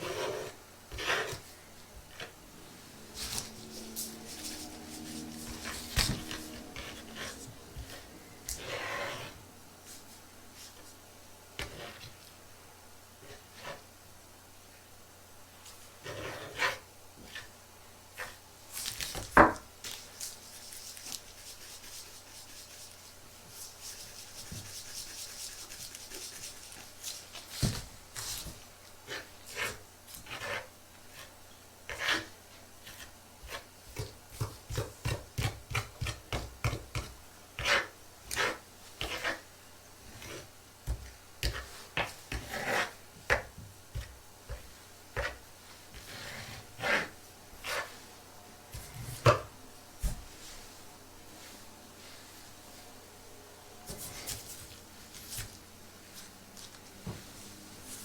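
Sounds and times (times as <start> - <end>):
hands rubbing and scraping objects: 3.1 - 10.8, 18.2 - 31.3.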